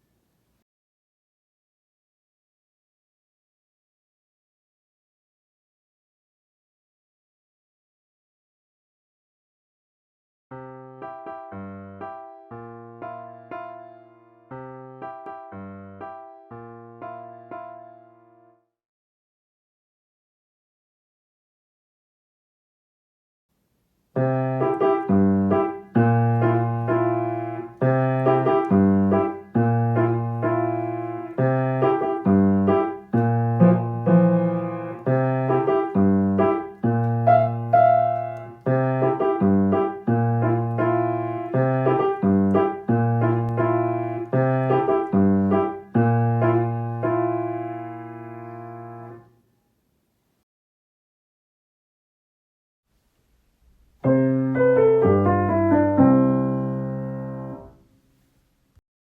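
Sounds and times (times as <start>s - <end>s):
quirky piano tune: 10.5s - 18.5s, 24.2s - 49.3s, 54.0s - 57.8s.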